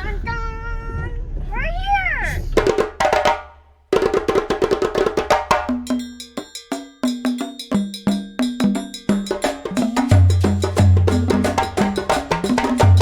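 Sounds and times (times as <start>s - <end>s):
percussive background music: 2.6s - 13.0s.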